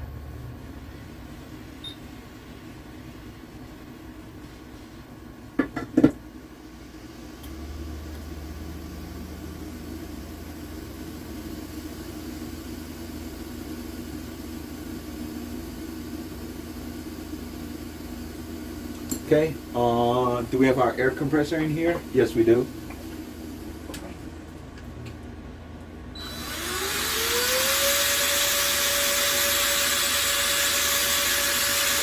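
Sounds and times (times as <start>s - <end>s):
heat gun humming: 26.2s - 32.0s.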